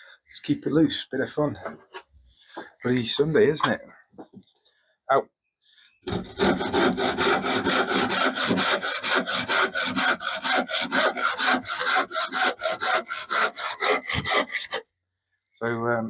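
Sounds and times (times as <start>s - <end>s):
hand saw cutting wood: 6.0s - 14.8s.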